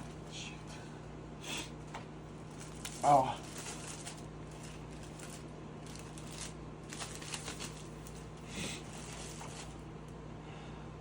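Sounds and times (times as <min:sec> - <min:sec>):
packaging rustling and crinkling: 0:02.4 - 0:09.8.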